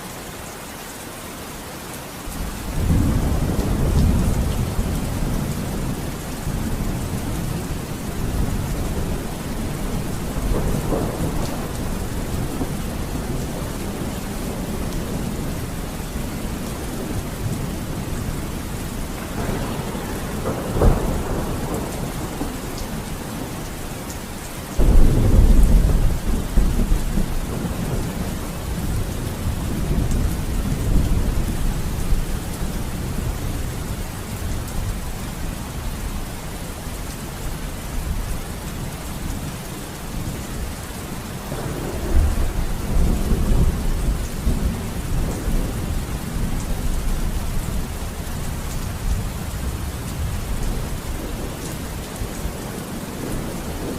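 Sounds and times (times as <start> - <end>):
steady rain: 0.0 - 53.9
rolling thunder rumble: 2.4 - 53.9
thunder crack: 19.3 - 22.6.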